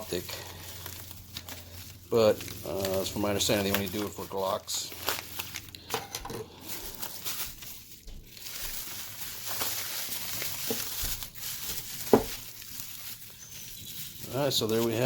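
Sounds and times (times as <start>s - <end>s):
packaging crinkling: 0.0s - 15.0s.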